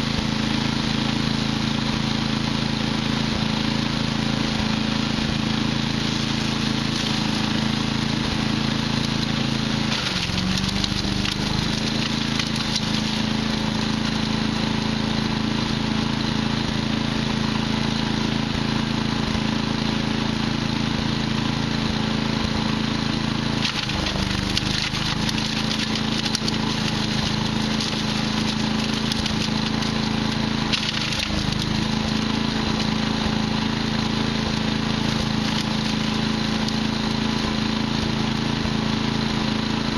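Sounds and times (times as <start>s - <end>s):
wood chipper engine running: 0.0s - 39.9s
wood splintering: 4.7s - 14.6s, 23.5s - 38.6s.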